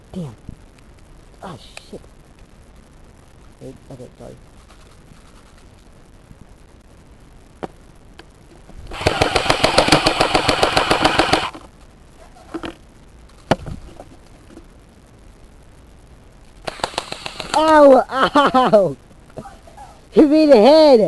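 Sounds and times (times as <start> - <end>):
airsoft gun automatic burst: 8.9 - 11.7, 16.6 - 17.6.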